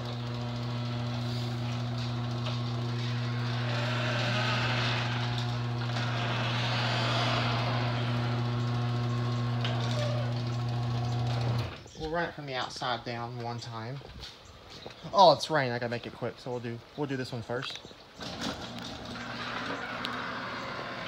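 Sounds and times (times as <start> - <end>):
garage door opener motor hum: 0.0 - 11.9, 18.2 - 21.0.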